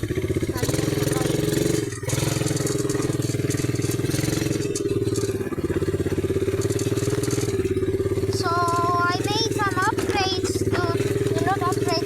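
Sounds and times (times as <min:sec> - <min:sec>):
atv engine running: 0:00.0 - 0:12.0.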